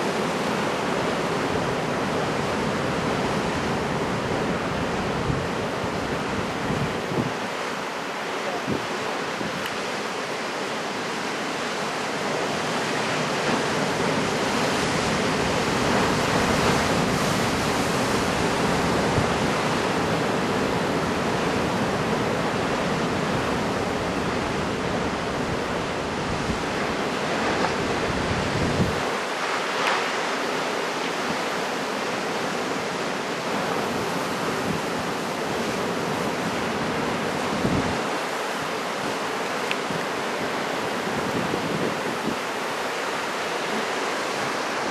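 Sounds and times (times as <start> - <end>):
waves breaking as surf: 0.0 - 44.9
wind buffeting the microphone: 4.3 - 7.6, 23.2 - 29.2, 37.2 - 38.2, 39.8 - 42.5.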